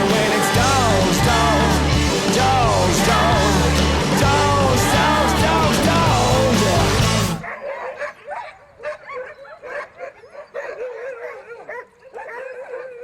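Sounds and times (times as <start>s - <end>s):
song playing: 0.0s - 7.4s
dog howling: 7.4s - 13.0s
dogs yipping and whining: 7.4s - 13.0s.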